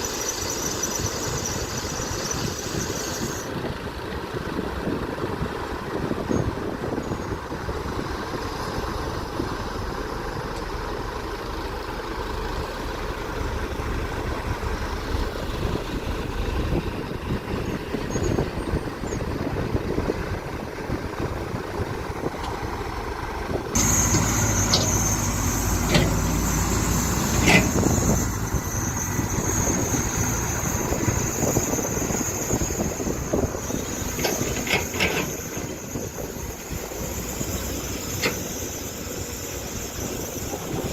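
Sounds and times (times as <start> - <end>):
high steady squeal: 0.0 - 3.6, 23.6 - 40.9
excavator diesel engines running: 0.0 - 40.9
metallic clanks: 23.8 - 28.3.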